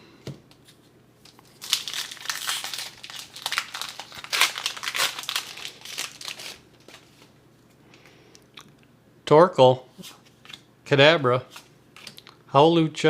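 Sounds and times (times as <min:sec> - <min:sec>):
foil wrapper crinkling: 0:01.2 - 0:07.3.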